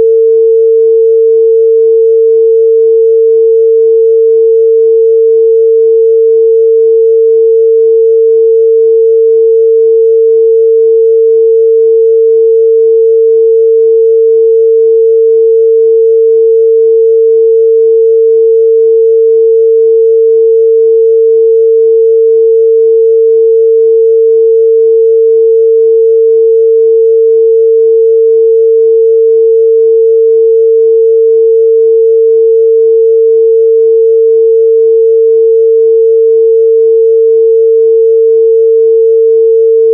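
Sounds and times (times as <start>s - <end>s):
sine-wave test tone: 0.0s - 39.9s.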